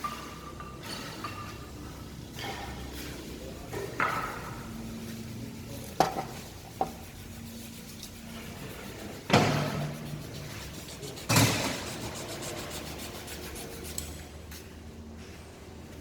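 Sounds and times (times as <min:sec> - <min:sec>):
handling scrape: 0:04.9 - 0:14.7.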